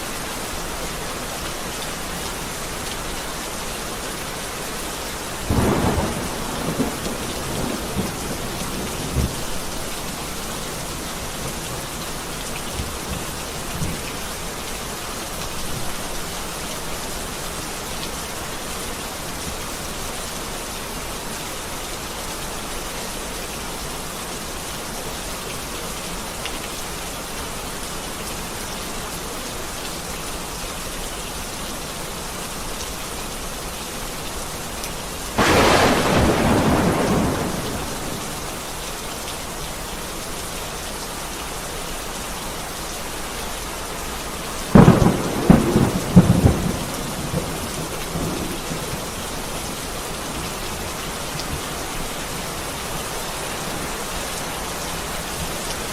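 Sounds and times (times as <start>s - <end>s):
heavy rain: 0.0s - 55.9s
sharp thunder cracks: 5.5s - 9.4s, 35.4s - 38.5s, 44.8s - 48.7s
thunderclap: 35.4s - 38.4s.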